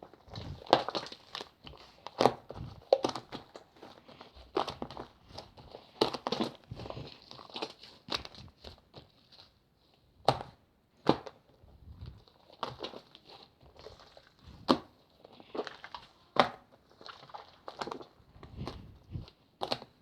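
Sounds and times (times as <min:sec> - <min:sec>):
slime squeezed crackling: 0:15.4 - 0:18.8.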